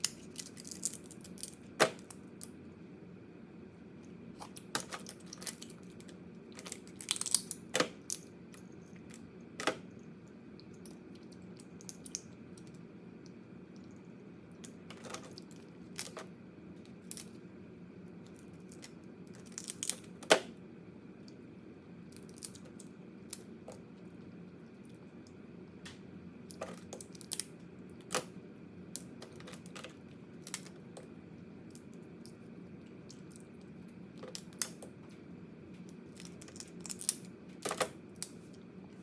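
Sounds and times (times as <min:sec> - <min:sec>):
crab shells cracking: 0:00.0 - 0:02.6, 0:04.4 - 0:09.9, 0:10.5 - 0:13.9, 0:18.2 - 0:20.5, 0:22.0 - 0:25.4, 0:26.4 - 0:35.0, 0:35.8 - 0:38.4
steady low hum: 0:00.0 - 0:39.0.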